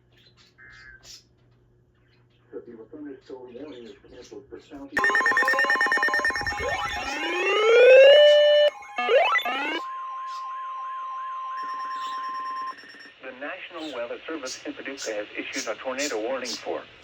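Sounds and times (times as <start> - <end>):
rising siren-like sweeps: 5.0 - 13.1
pulsing electronic alert buzz: 5.0 - 13.2
steady high alarm tone: 5.0 - 13.2.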